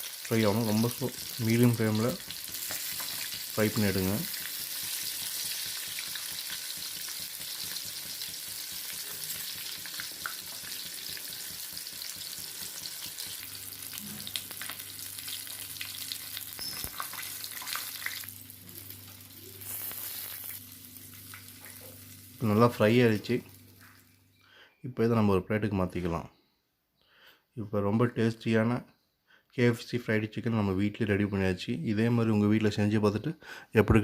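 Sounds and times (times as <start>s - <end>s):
chicken deep-frying in oil: 0.0s - 24.1s
low steady hum: 11.7s - 24.7s.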